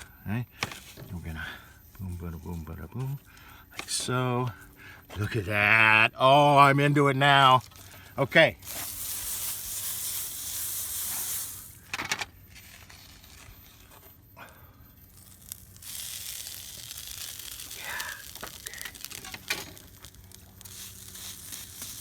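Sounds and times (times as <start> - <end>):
food sizzling on a griddle: 8.6 - 11.9, 15.0 - 22.0.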